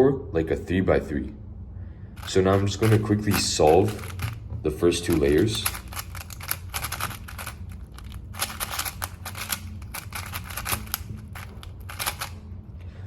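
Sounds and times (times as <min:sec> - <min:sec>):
puzzle cube clicking: 0:02.2 - 0:12.4.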